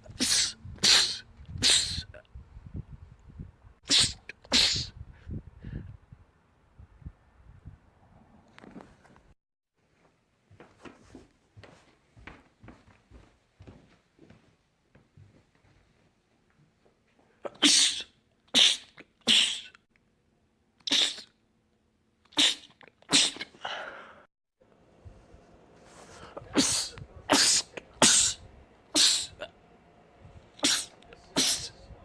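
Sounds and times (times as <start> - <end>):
man sneezing: 0.0 - 2.2, 3.9 - 5.0, 17.4 - 19.8, 20.9 - 21.3, 22.3 - 24.0, 26.1 - 28.4, 29.0 - 29.5, 30.6 - 31.8.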